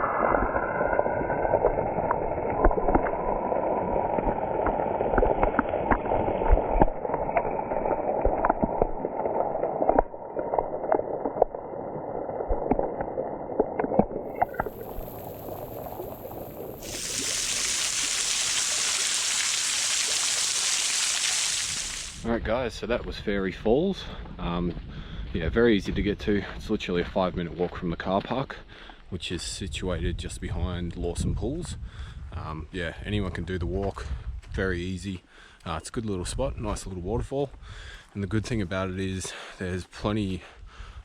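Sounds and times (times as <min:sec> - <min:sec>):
small waterfall rushing: 0:16.8 - 0:22.2.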